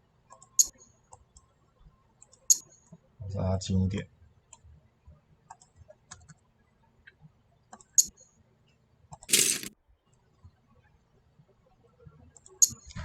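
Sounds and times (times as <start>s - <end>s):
plastic bricks clicking together: 9.3s - 9.7s
rattling rustle of parts: 9.3s - 9.7s.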